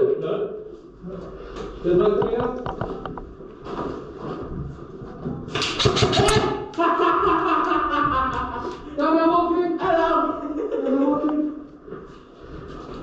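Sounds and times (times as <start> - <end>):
sharp scratch-like clicks: 5.6 - 6.5.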